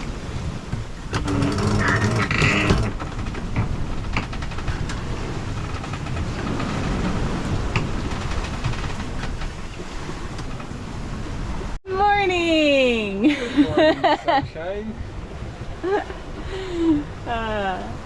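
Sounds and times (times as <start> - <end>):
sharp knocks aboard boat: 0.0 - 10.8, 13.6 - 14.8
wind and water rushing: 0.0 - 18.0.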